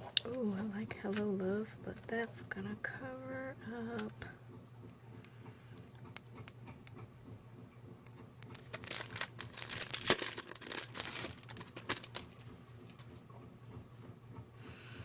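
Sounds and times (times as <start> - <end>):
plastic packet crinkling: 8.4 - 12.5.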